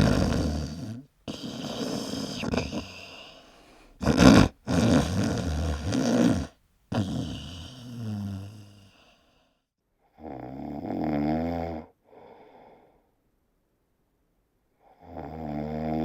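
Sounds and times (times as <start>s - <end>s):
man snoring: 0.0s - 9.1s, 10.2s - 11.9s, 14.9s - 16.0s.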